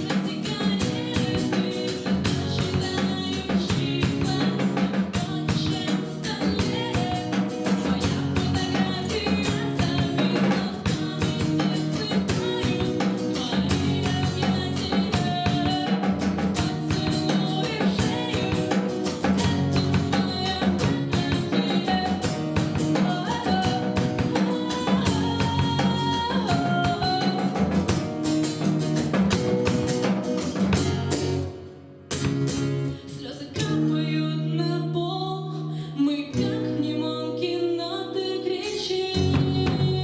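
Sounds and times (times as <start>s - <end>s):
drum kit beat: 0.0s - 31.5s
live band playing: 0.0s - 32.7s.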